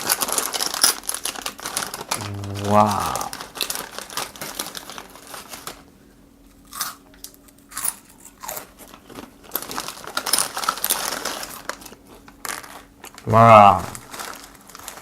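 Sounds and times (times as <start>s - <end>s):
plastic packaging crinkling: 0.0s - 2.1s, 14.1s - 15.0s.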